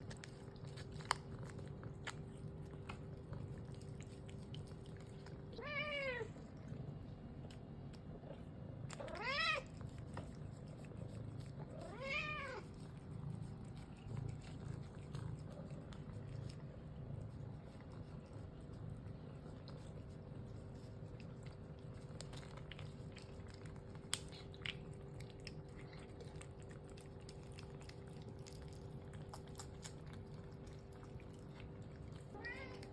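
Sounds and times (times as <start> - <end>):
crunching of eating: 0.0 - 32.9
cat meowing: 5.6 - 6.4, 9.0 - 9.7, 11.8 - 12.6, 32.4 - 32.9.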